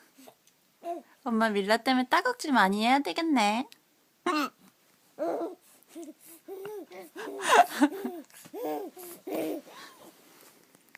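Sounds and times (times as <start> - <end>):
baby giggling: 5.2 - 9.7.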